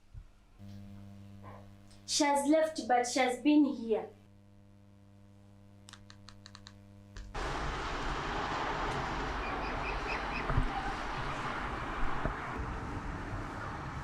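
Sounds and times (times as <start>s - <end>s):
low hum: 0.6s - 2.1s, 4.2s - 14.0s
outdoor wind noise: 7.2s - 14.0s.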